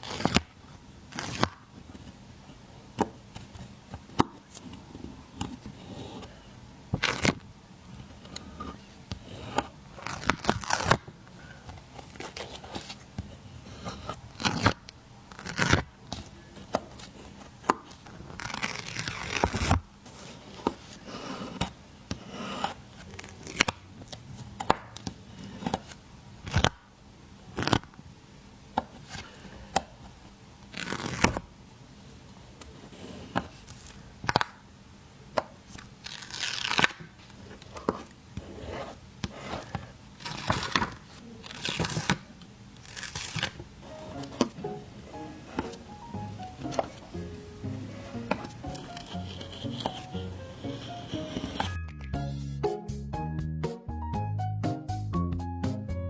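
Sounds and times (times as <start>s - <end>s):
sticker rustling: 35.7s - 51.8s
stickers peeling off backing: 47.9s - 51.8s.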